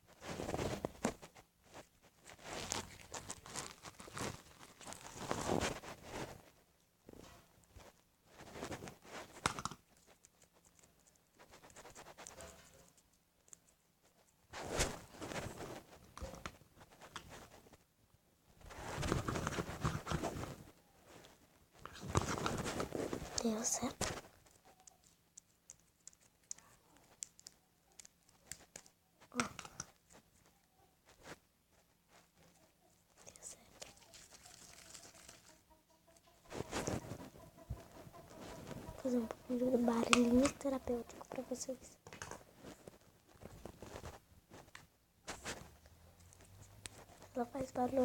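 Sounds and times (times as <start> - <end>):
slime squelching and clicking: 24.4 - 30.1.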